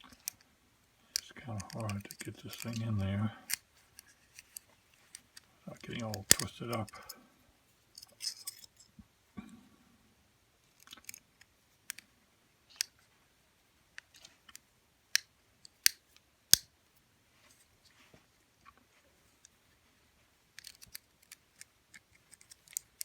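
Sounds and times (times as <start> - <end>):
lock pick clicking and scraping: 1.1 - 2.9, 3.5 - 7.2, 7.9 - 8.8, 20.6 - 23.0.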